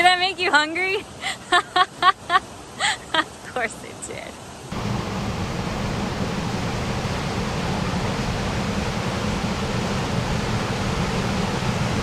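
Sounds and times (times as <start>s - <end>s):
waterfall rushing: 4.4s - 12.0s.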